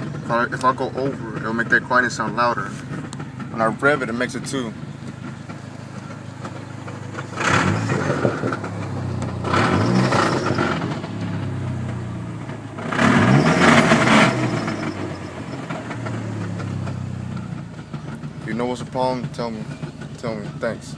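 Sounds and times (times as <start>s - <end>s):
car engine idling and revving: 0.0s - 20.9s.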